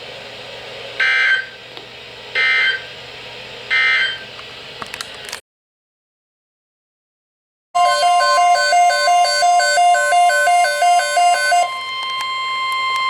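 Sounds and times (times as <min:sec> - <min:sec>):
electronic data tone bursts: 0:07.8 - 0:11.9.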